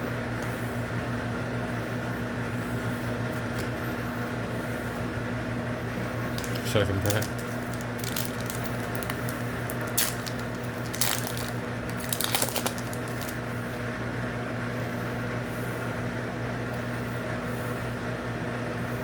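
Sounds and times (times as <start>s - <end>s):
foil wrapper tearing and crinkling: 6.3s - 13.4s.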